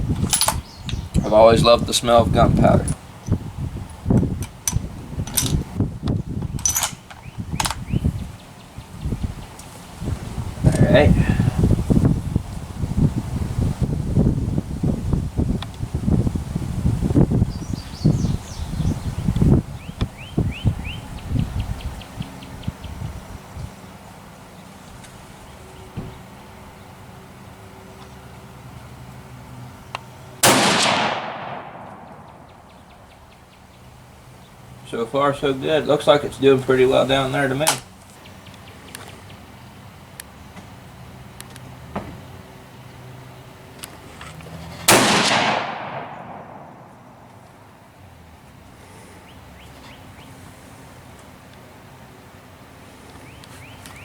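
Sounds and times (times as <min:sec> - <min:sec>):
rifle shot echoing: 0:30.4 - 0:32.5, 0:44.9 - 0:47.2.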